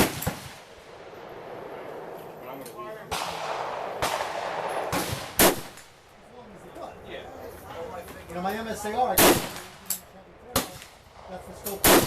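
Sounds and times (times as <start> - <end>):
gunshots: 0.0 - 2.1, 3.1 - 6.0, 9.1 - 9.9, 10.5 - 12.0.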